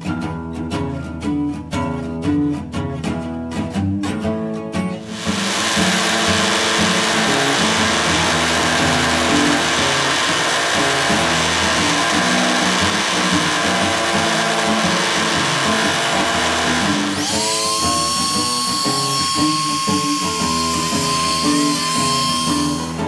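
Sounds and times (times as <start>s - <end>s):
acoustic blues guitar music: 0.0s - 23.0s
rotary tool whirring on steel: 5.1s - 23.0s.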